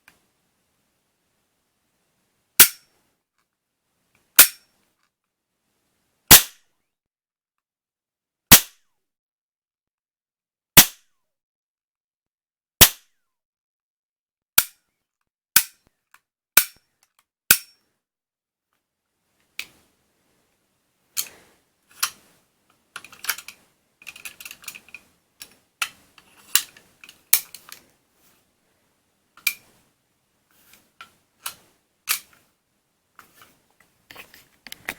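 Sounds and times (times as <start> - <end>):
toy cap gun shots: 6.3 - 6.6, 8.5 - 8.8.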